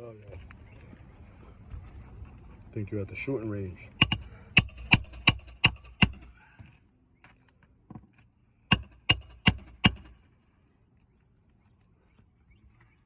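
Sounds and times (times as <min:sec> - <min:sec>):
hammer striking nails: 0:04.0 - 0:06.3, 0:08.7 - 0:10.2.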